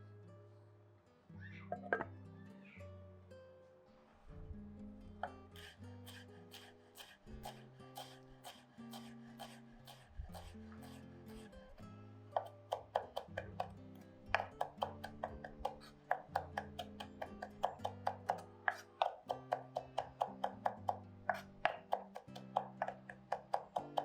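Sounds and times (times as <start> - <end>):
background music of low notes: 0.0 - 24.0
knife chopping on cutting board: 5.6 - 11.0, 12.4 - 13.8, 14.4 - 24.0.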